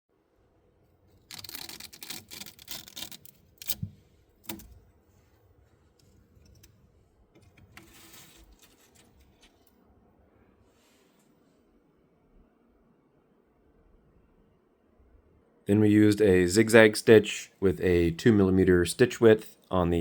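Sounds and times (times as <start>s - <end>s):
crinkly rustling: 1.1s - 6.8s, 7.4s - 9.8s
sharp clicks or knocks: 1.3s - 4.8s.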